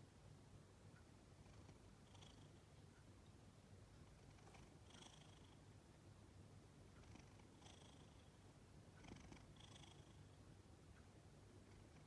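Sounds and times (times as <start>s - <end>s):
cat purring: 1.4s - 2.7s, 4.0s - 5.6s, 6.9s - 10.4s, 11.6s - 12.0s.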